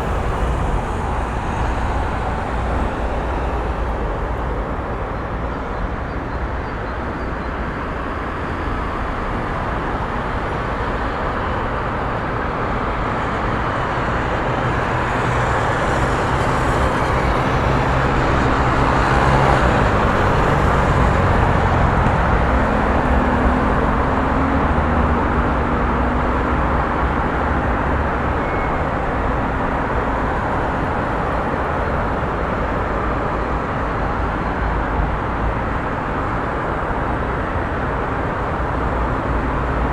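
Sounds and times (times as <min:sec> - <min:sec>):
heavy vehicle passing: 0:00.0 - 0:05.4
car and truck engines: 0:00.0 - 0:39.9.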